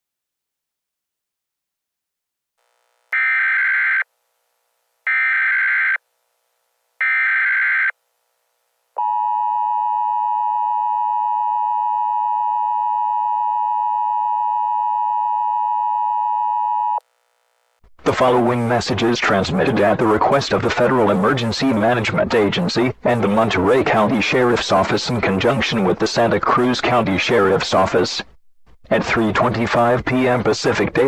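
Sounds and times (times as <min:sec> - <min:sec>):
two-tone alarm: 0:03.1 - 0:04.1, 0:05.1 - 0:06.0, 0:07.0 - 0:08.0, 0:09.0 - 0:17.0.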